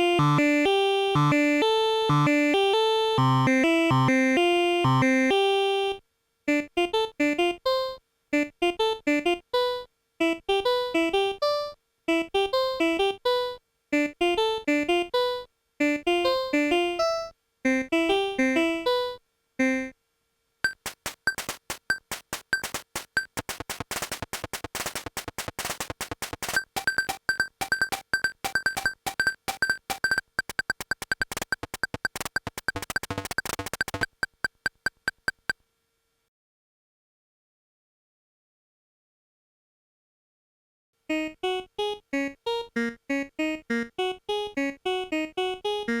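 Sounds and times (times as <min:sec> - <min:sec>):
electronic keyboard notes: 0:00.0 - 0:05.5, 0:41.2 - 0:46.0
clicky electronic pulses: 0:20.7 - 0:35.5.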